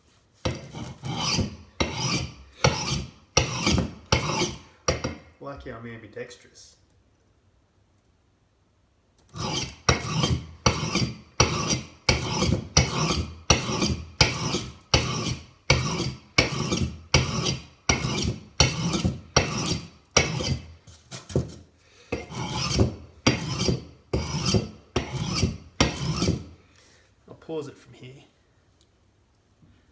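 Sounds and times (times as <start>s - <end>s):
axe rasping on sharpening stone: 0.4s - 5.2s, 9.4s - 20.7s, 22.1s - 26.5s.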